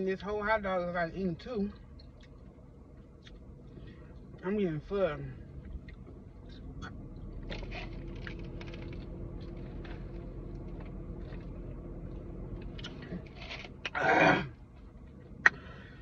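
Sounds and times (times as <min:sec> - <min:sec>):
low steady hum: 0:00.0 - 0:16.0
quiet eating sounds: 0:01.7 - 0:04.4.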